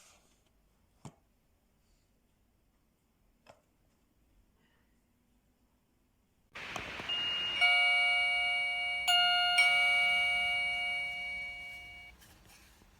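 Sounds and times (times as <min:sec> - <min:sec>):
doorbell chime melody: 0:06.6 - 0:12.1.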